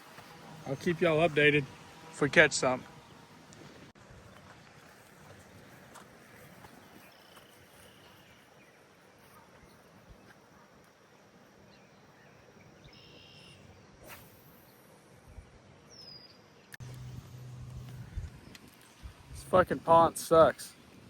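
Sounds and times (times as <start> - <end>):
faint bird chirps: 7.0 - 17.4.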